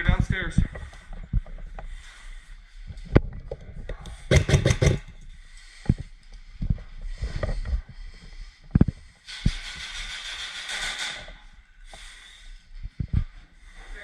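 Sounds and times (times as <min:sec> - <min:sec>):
knocks and thuds of gear: 0:04.3 - 0:05.1.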